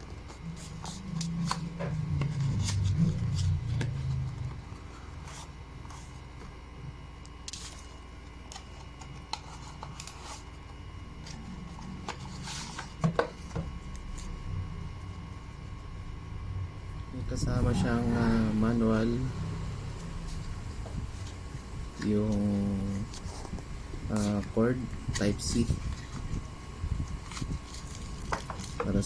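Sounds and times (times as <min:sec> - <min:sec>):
paper or plastic rustling: 0:19.5 - 0:29.0.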